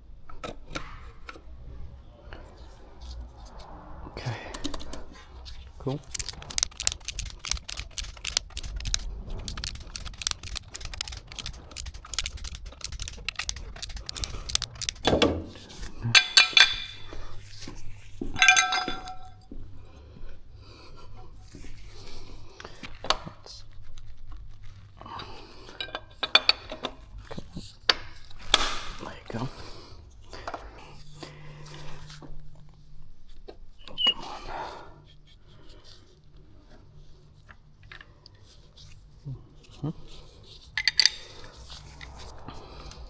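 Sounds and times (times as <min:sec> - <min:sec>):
small metallic clicks: 0:06.0 - 0:15.2
ringing metallic clinks: 0:18.4 - 0:19.4.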